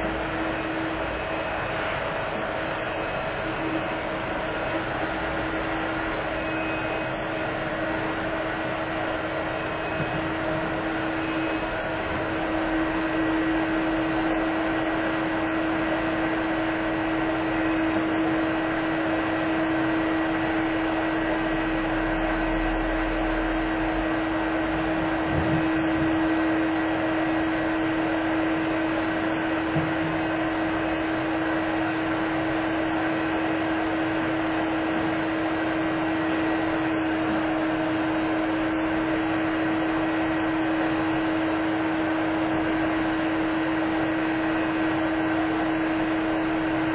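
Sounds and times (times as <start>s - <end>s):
vacuum cleaner running: 24.0s - 46.9s.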